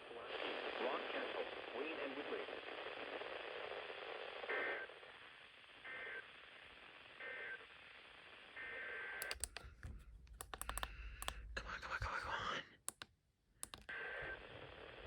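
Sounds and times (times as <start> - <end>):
radio static hiss: 0.0 - 8.7, 13.9 - 15.0
rapid sharp clicks: 9.2 - 13.9.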